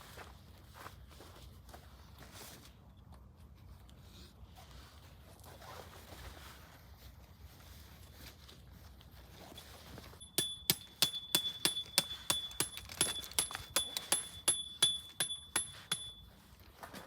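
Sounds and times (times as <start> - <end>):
high ringing tone: 9.6 - 16.6
metal-on-metal strikes: 10.2 - 16.3.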